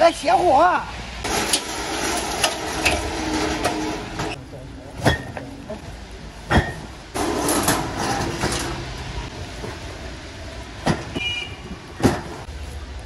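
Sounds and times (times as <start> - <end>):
cartons scraping and shuffling: 6.5 - 10.1.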